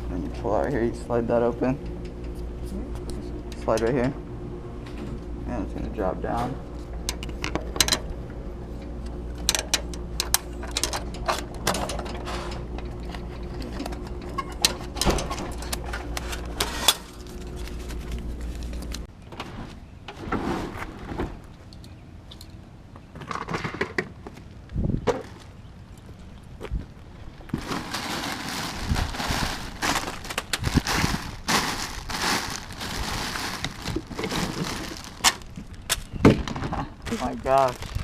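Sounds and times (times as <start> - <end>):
electrical hum: 0.0 - 22.9, 24.5 - 38.0
parts knocking and clattering: 6.4 - 8.2, 9.4 - 17.5.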